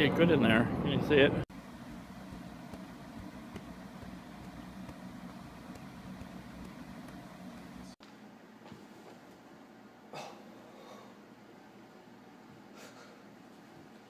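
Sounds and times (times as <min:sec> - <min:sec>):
low hum: 0:00.6 - 0:08.0.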